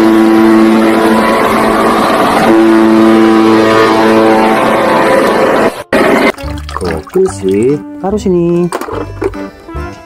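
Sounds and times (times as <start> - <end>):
ship horn blasts: 0.0 - 6.3.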